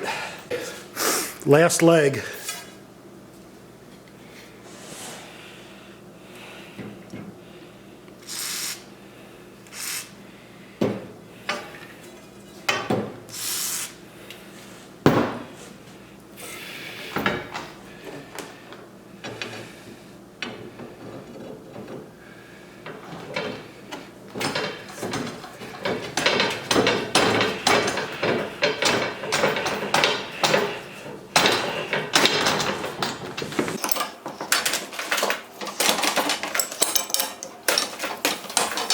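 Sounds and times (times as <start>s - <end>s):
metal pipe knocks and clanks: 20.4s - 22.1s, 22.8s - 38.9s
rapid metal rattling and scraping: 22.8s - 38.9s.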